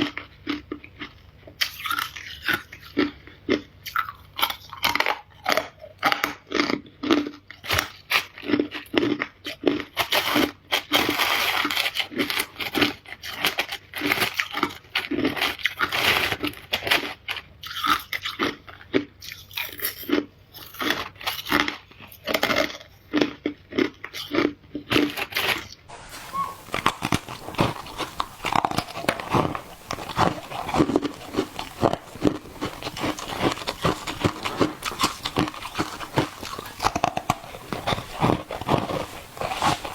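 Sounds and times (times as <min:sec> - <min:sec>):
ice being chewed: 0:00.0 - 0:39.9
steady hiss: 0:25.9 - 0:39.9.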